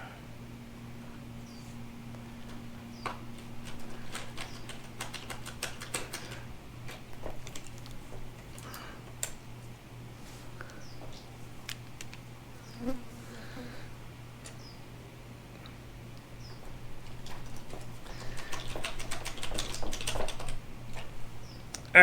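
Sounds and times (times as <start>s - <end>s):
low hum: 0.0s - 5.0s.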